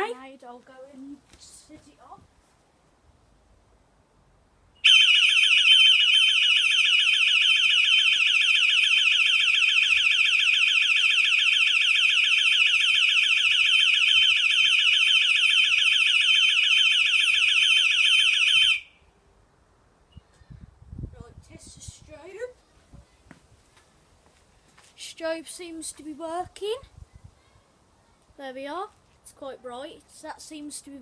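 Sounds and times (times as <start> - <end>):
alarm siren warbling wail: 4.8 - 18.9.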